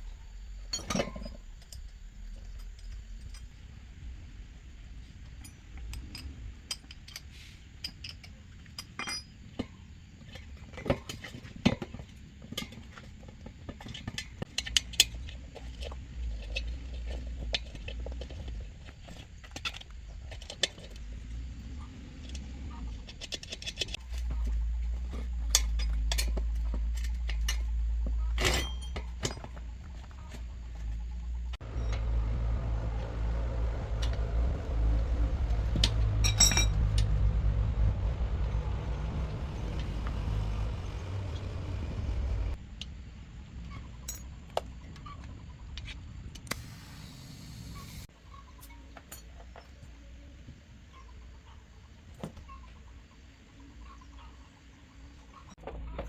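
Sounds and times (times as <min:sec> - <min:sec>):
small metal parts clinking: 0:05.3 - 0:09.6, 0:23.1 - 0:31.0, 0:35.7 - 0:37.3
steady low hum: 0:13.9 - 0:48.4
low rumble: 0:24.0 - 0:43.6.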